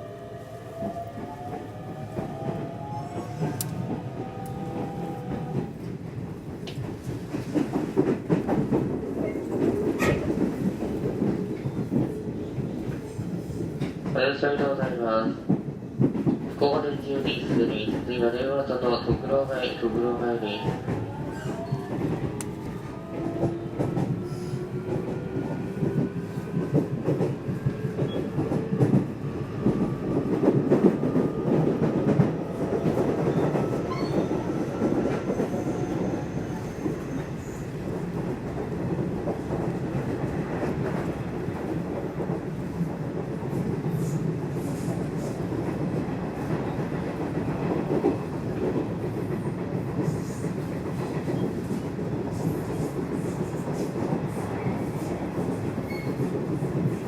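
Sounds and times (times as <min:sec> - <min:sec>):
train wheels rumbling on rails: 0:00.0 - 0:57.0
rail-joint clicks: 0:02.2 - 0:05.7, 0:06.6 - 0:12.2.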